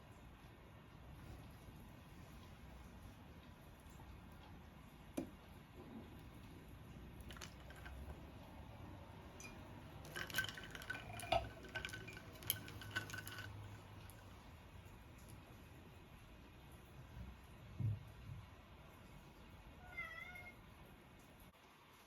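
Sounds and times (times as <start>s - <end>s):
glass clinking: 7.2s - 8.2s, 9.3s - 14.3s
glass ringing faintly: 9.4s - 13.7s.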